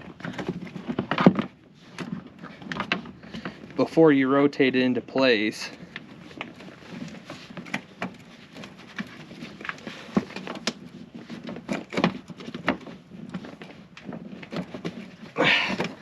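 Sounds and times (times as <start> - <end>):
plastic clicking and scraping: 0.0 - 3.8, 5.7 - 16.0.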